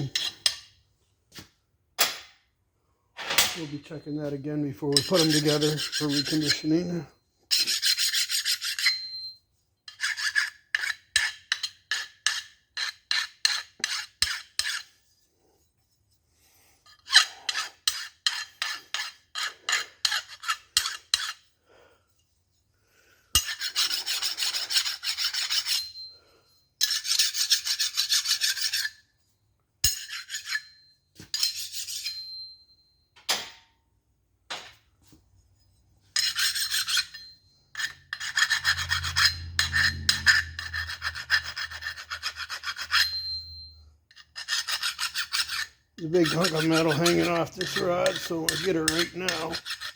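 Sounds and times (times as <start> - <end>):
hand file rasping on steel: 4.2 - 9.2, 9.9 - 15.2, 16.8 - 22.3, 23.3 - 26.0, 26.8 - 29.0, 29.9 - 32.2, 36.1 - 43.4, 44.1 - 49.9.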